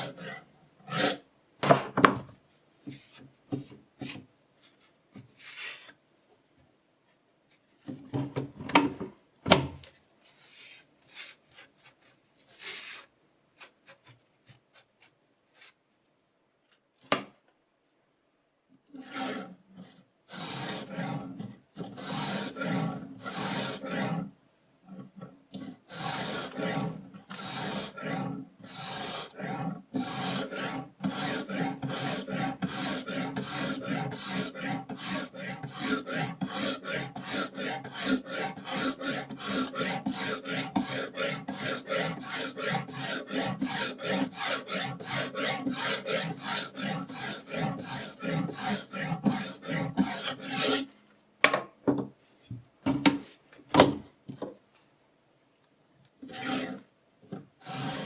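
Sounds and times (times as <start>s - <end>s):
sharpening stone scraping knife: 20.3s - 21.2s, 21.8s - 24.2s, 25.9s - 50.9s, 56.3s - 56.8s, 57.6s - 58.0s.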